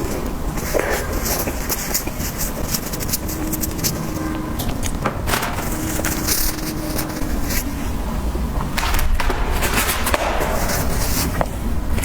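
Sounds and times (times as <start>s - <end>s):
chewing with crackles: 0.0s - 5.0s.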